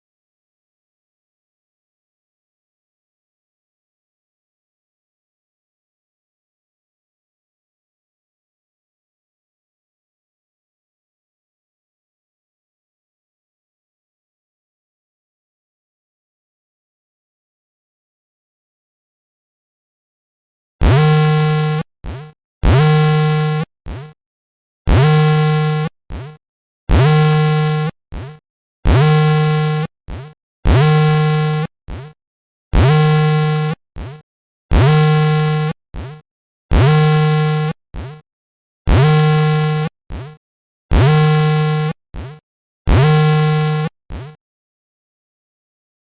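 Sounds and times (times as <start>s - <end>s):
buzzy electronic alarm tone: 20.8s - 24.2s, 24.9s - 32.2s, 32.8s - 38.2s, 38.9s - 44.4s.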